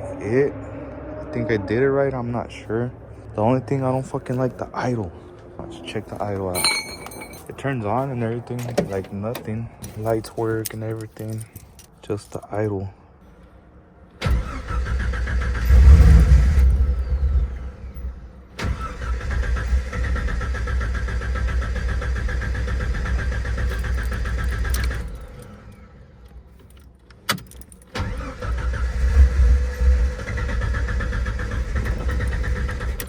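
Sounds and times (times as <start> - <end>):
car engine starting and idling: 13.3 - 33.0.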